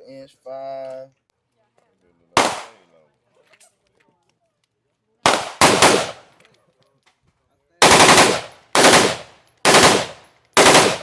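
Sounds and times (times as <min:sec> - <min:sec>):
rapid-fire gunshots in bursts: 0:02.4 - 0:02.8, 0:05.3 - 0:06.3, 0:07.8 - 0:11.0.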